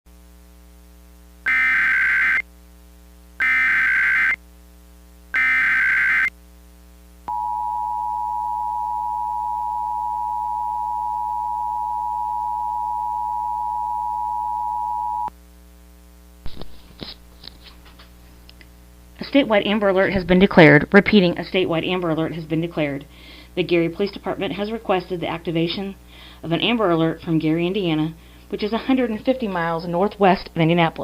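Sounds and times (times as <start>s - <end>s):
digital data header bursts: 3.4s - 4.4s
two-tone attention signal: 7.3s - 15.3s.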